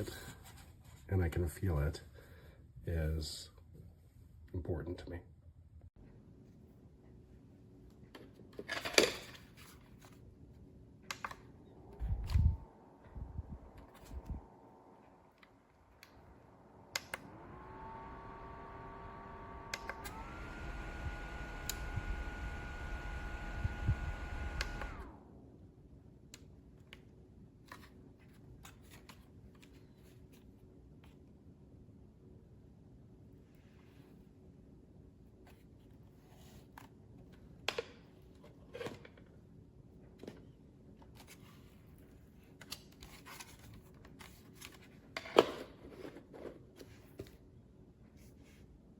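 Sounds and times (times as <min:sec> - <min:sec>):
desk fan whirring: 0:09.6 - 0:26.7.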